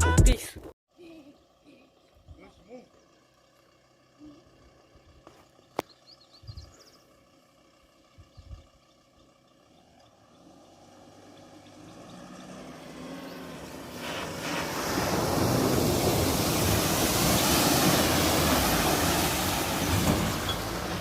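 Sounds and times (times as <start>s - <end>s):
wind rushing over microphone: 13.5s - 20.0s.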